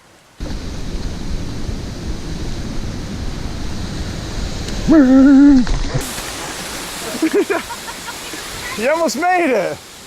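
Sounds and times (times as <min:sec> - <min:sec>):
flowing water rushing: 0:00.0 - 0:10.0
person calling out: 0:04.9 - 0:05.7.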